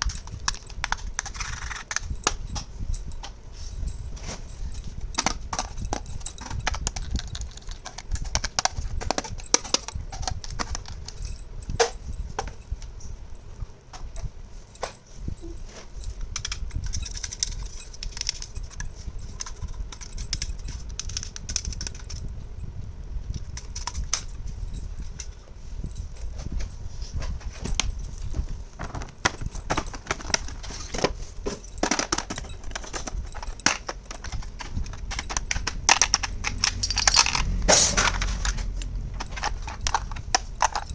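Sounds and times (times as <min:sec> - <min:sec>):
plastic toy pieces clicking: 0:31.8 - 0:38.3
low handling rumble: 0:34.2 - 0:40.9.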